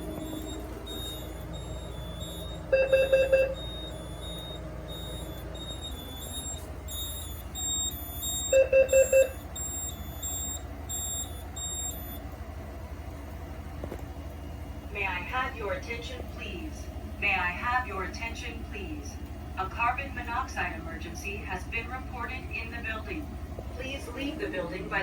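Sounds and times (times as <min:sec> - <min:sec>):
low-pitched alarm beeps: 0:00.0 - 0:12.2.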